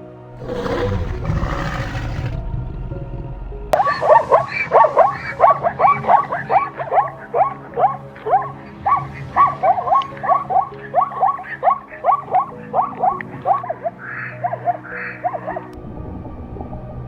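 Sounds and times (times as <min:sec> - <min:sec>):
animal short rising calls: 0:00.4 - 0:05.5.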